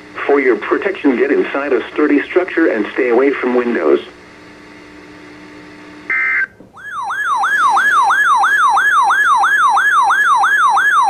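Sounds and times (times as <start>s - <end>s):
electronic yelp siren: 6.1s - 11.0s.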